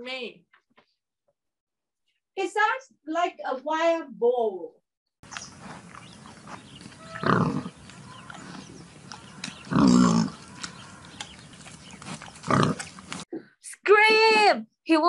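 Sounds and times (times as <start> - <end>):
wild boar grunting: 5.5 - 13.2.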